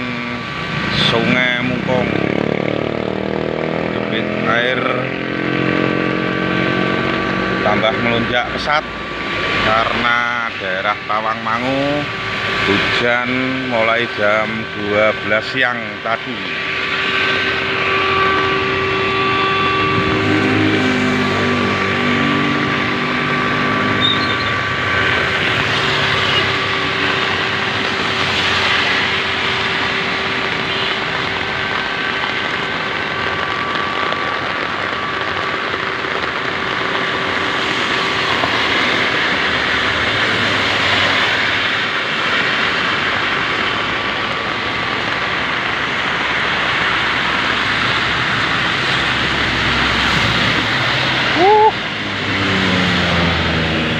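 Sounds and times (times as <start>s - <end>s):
brief rising tone: 16.5s - 30.9s, 49.8s - 51.8s.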